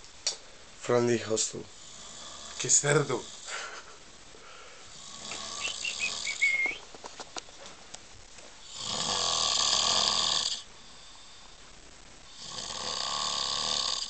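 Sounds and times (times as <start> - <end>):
man snoring: 1.7 - 3.6, 4.9 - 6.5, 8.6 - 11.2, 12.3 - 14.0.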